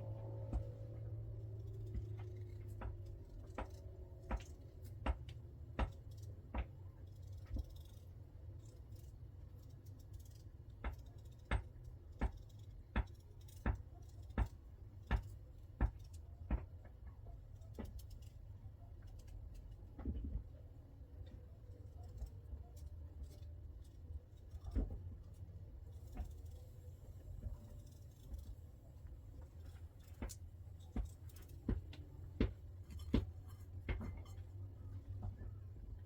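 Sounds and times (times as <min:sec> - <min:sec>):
low steady hum: 0:00.0 - 0:36.0.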